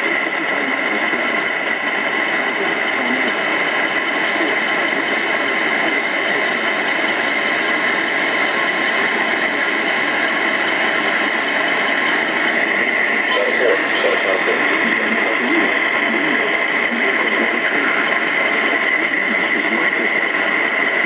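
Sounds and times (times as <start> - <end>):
radio static hiss: 11.0 - 20.6.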